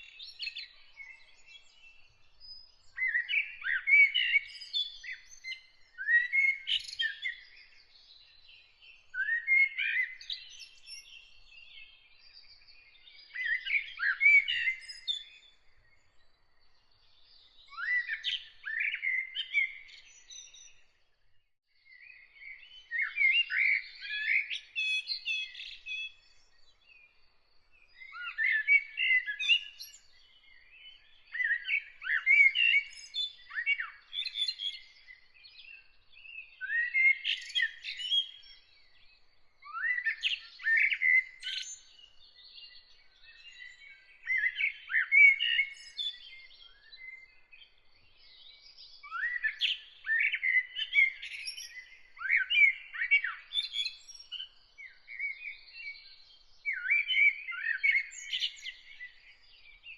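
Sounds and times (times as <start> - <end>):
songbird whistling phrases: 2.9 - 7.8, 13.1 - 15.5, 17.7 - 20.8, 22.5 - 26.4, 28.0 - 35.9, 36.6 - 38.8, 39.6 - 47.6, 48.2 - 59.6.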